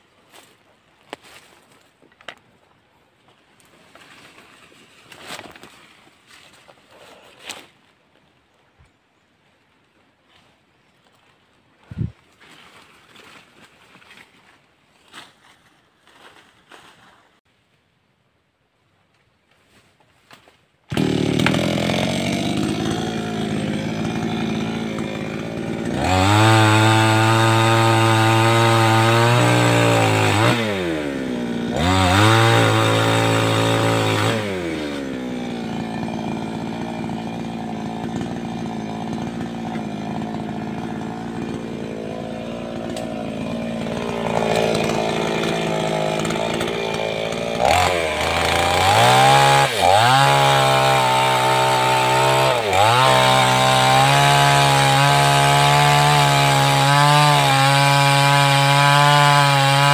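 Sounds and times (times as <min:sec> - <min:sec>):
chainsaw revving while cutting: 0:20.9 - 0:59.9.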